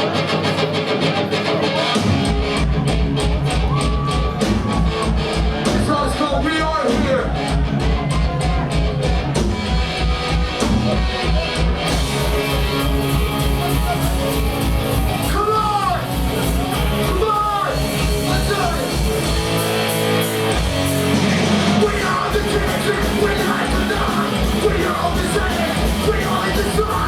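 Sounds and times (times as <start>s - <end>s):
distorted electric guitar and bass: 0.0s - 27.0s
fast drums: 2.0s - 27.0s
shouted vocals: 12.2s - 19.3s, 21.1s - 27.0s.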